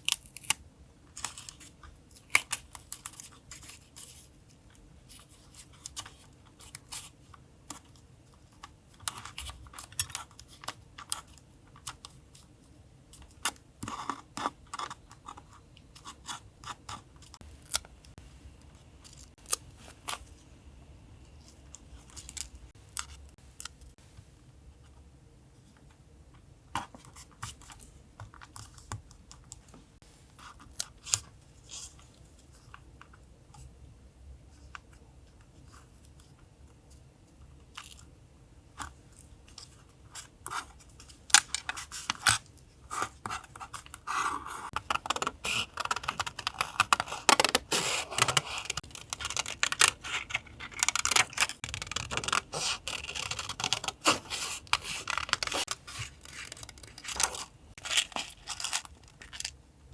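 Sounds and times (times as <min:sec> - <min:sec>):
paper rustling and scraping: 0:41.6 - 0:59.5.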